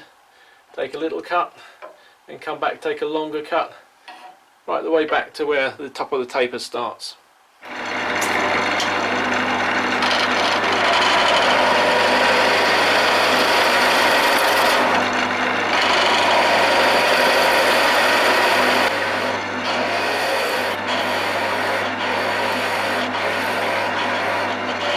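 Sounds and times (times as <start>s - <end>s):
chisel scraping spinning wood: 7.6s - 24.9s
lathe motor hum: 7.6s - 24.9s.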